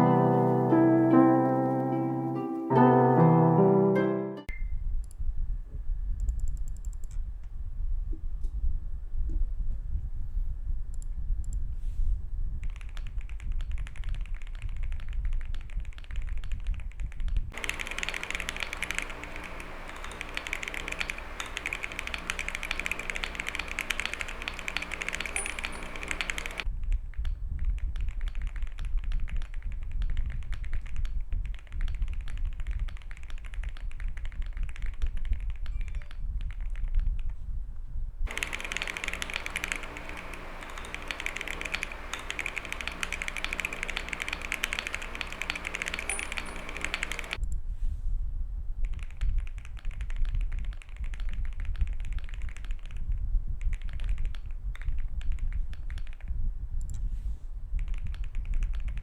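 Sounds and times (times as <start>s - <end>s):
fast mechanical keyboard typing: 12.6s - 26.7s, 27.6s - 37.0s, 38.3s - 47.4s, 48.8s - 56.2s, 57.8s - 59.0s
faint steady hum: 17.6s - 26.7s, 38.3s - 47.4s.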